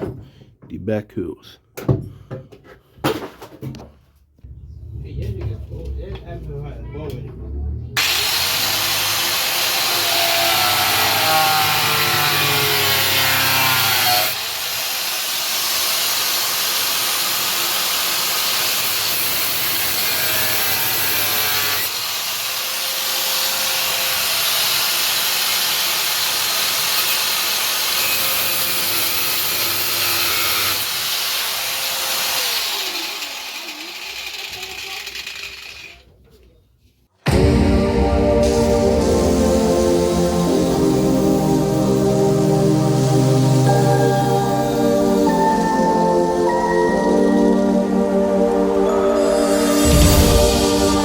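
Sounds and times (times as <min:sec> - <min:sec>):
power saw cutting: 0:08.0 - 0:36.0, 0:38.4 - 0:51.0.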